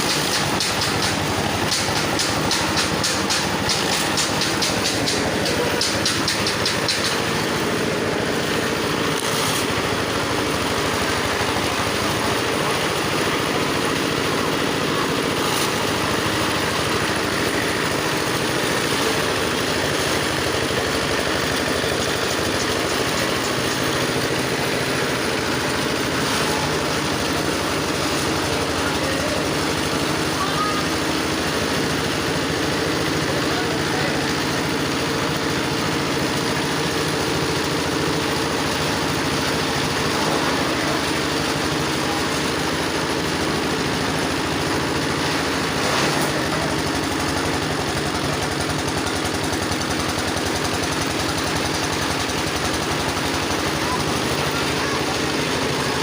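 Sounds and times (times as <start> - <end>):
grass chopper machine running: 0.0 - 56.0.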